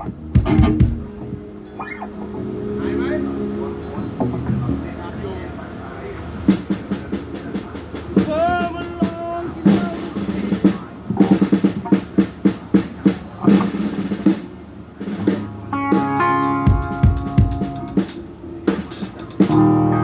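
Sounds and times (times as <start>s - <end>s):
band sustained chord: 0.0s - 5.9s, 15.6s - 18.3s
snare and bass drum hits: 0.4s - 1.1s, 15.2s - 19.7s.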